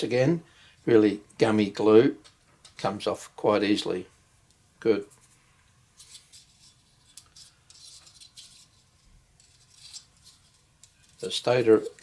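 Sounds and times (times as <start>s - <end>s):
hands scratching and rustling film: 6.0s - 12.0s.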